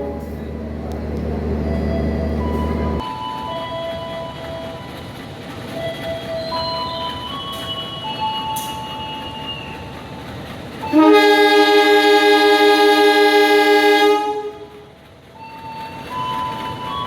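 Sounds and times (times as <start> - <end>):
train horn tones: 0.0 - 0.6, 10.8 - 16.8
loud two-note horn blast: 10.9 - 14.8.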